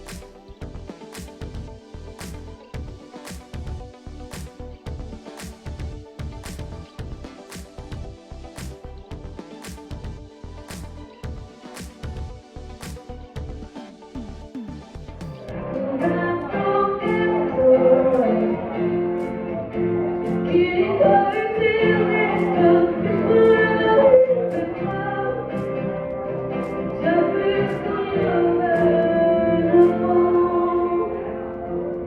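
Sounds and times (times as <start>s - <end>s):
instrumental accompaniment: 0.0s - 32.0s
person singing: 15.4s - 32.0s.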